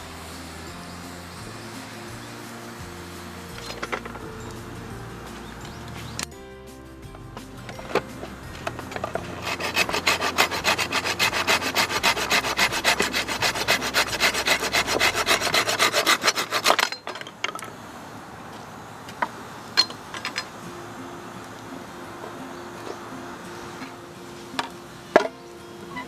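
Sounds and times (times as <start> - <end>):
hand saw cutting wood: 7.8 - 17.1.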